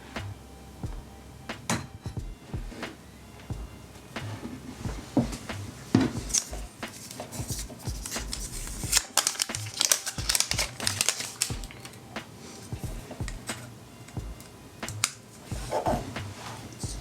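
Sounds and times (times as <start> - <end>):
packaging crinkling with clicks: 6.3 - 12.7.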